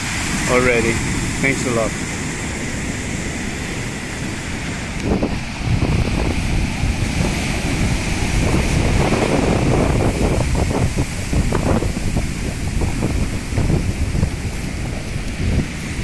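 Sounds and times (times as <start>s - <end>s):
rough surf washing onto beach: 0.0s - 16.0s
wind buffeting microphone: 0.0s - 16.0s.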